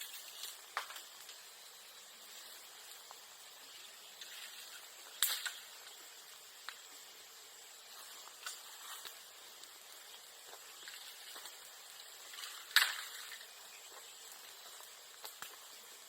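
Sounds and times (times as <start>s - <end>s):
bamboo bursting pops: 0.0s - 1.5s, 2.7s - 7.1s, 7.8s - 15.9s
bonfire crackling: 0.0s - 16.0s
steady fire hiss: 0.0s - 16.0s.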